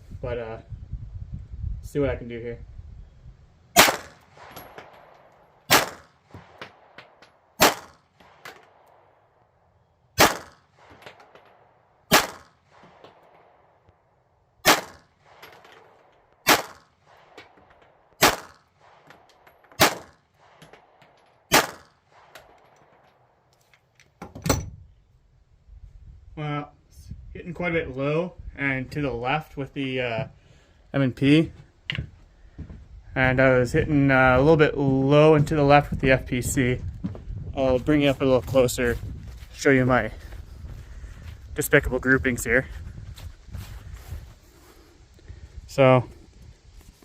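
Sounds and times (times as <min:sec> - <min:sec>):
pistol shots with ringing echo: 0:03.8 - 0:09.5, 0:10.2 - 0:13.9, 0:14.6 - 0:23.0.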